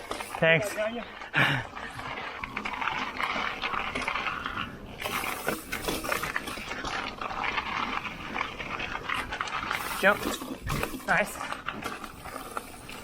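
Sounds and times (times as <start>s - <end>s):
bike tyres on rough trail: 0.0s - 13.0s
person panting: 1.1s - 2.3s.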